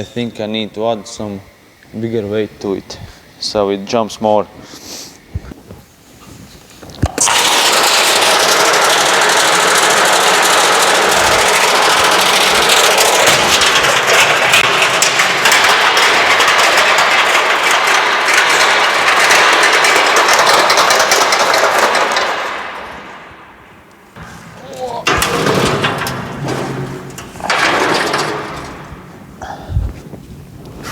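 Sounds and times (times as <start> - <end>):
washing machine tub rattling and banging: 7.7 - 23.5, 24.1 - 29.6.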